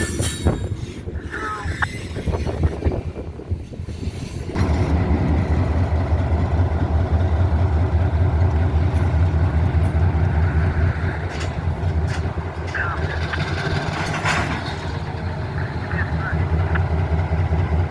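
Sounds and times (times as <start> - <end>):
low engine rumble: 4.4 - 17.9.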